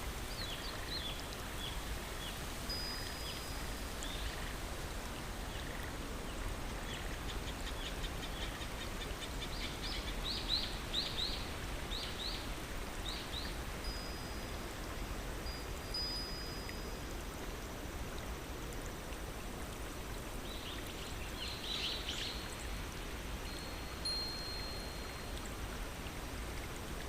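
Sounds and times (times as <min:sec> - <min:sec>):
flowing water rushing: 0:00.0 - 0:27.0.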